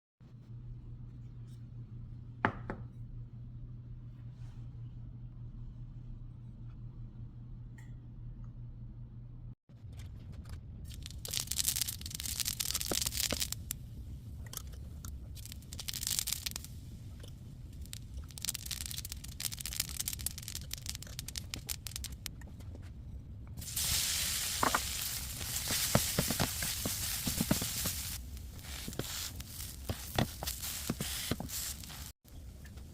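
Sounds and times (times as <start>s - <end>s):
hot oil sizzling in a pan: 10.9s - 13.8s, 15.4s - 17.1s, 17.7s - 22.3s, 23.6s - 32.2s.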